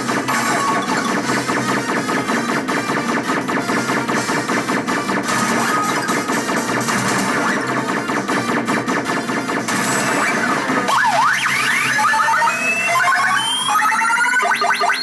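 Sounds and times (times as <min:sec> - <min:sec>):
pachinko machine jangling clatter: 0:00.0 - 0:11.8
swooping electronic tones: 0:10.2 - 0:15.0
rising runs of beeps: 0:11.4 - 0:15.0.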